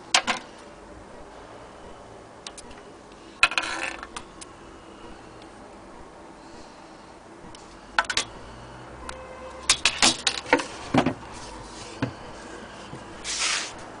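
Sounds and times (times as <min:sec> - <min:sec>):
scraping rustle: 0:10.4 - 0:13.9.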